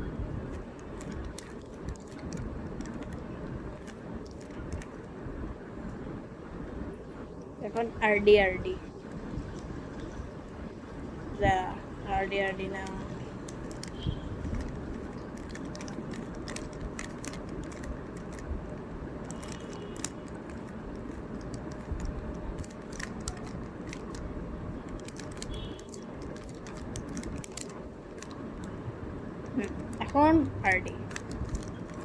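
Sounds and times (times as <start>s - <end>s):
steady background noise: 0.0s - 32.0s
puzzle cube layers clicking: 12.6s - 28.8s.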